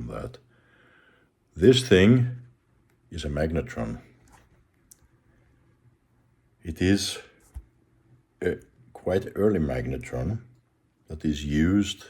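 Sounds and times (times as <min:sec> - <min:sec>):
faint clicks: 0:04.2 - 0:05.2.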